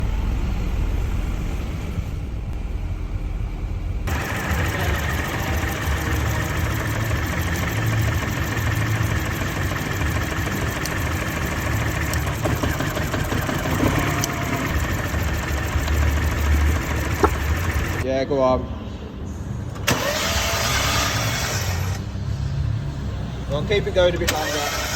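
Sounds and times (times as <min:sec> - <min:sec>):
car engine idling with misfire: 0:04.1 - 0:18.0, 0:19.8 - 0:22.2, 0:23.5 - 0:24.9.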